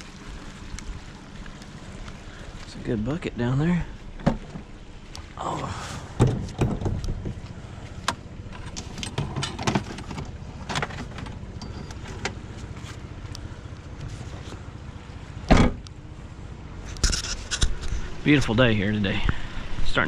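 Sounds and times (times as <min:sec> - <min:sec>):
vehicle engine rumbling: 0:00.0 - 0:20.0
loud thump: 0:15.5 - 0:15.8.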